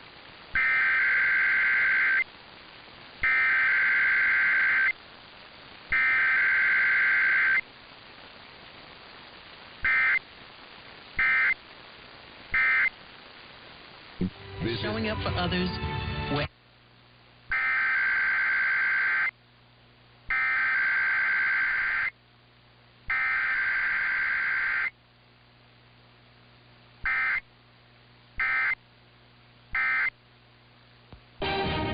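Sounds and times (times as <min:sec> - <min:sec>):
warbling digital data bursts: 0:00.5 - 0:02.3, 0:03.2 - 0:05.0, 0:05.9 - 0:07.7, 0:09.8 - 0:10.3, 0:11.2 - 0:11.6, 0:12.5 - 0:13.0, 0:17.5 - 0:19.3, 0:20.3 - 0:22.2, 0:23.1 - 0:25.0, 0:27.1 - 0:27.4, 0:28.4 - 0:28.8, 0:29.8 - 0:30.1.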